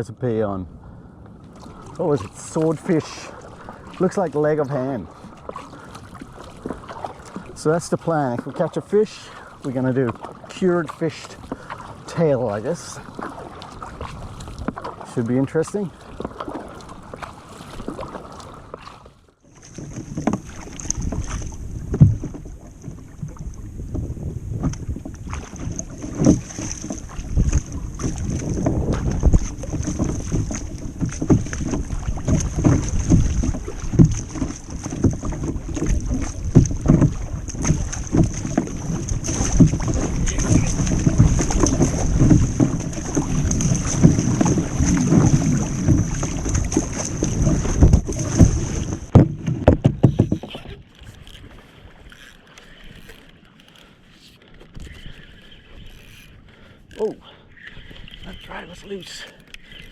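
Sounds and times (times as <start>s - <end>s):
water splashing against kayak hull: 0.0s - 59.9s
wind buffeting microphone: 19.7s - 51.6s.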